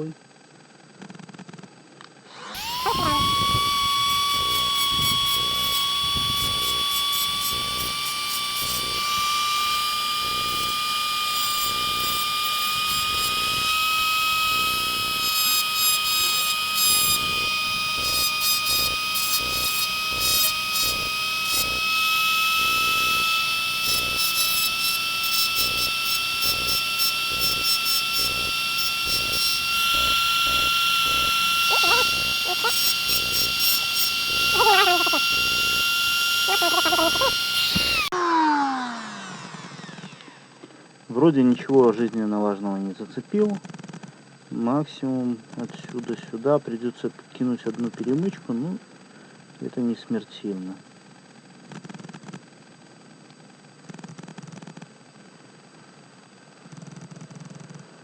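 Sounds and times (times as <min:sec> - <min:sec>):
rotary engraver whining: 0:02.3 - 0:38.2
bit grinding circuit board: 0:02.6 - 0:38.1.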